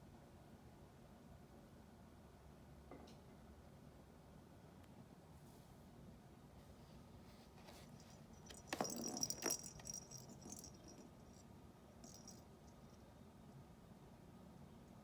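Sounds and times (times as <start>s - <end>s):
high jingle: 8.0s - 11.4s, 12.0s - 13.0s
toy rattling clicks: 8.5s - 11.0s.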